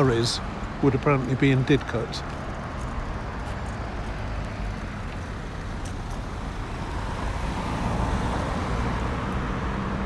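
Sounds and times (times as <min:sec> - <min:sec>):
road traffic: 0:00.0 - 0:10.0.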